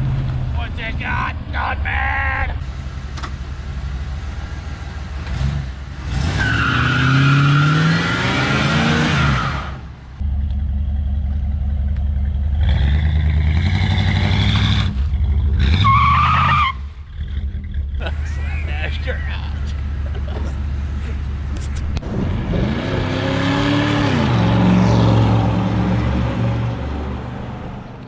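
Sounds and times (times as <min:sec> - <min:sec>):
car engine revving hard: 0:05.2 - 0:09.8, 0:12.6 - 0:16.2, 0:22.0 - 0:26.9.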